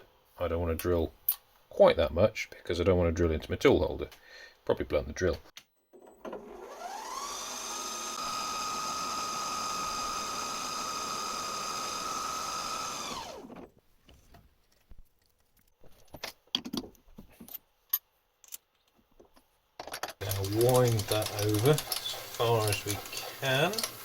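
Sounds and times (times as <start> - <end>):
metal lathe motor whine: 6.6 - 13.5, 20.2 - 24.0.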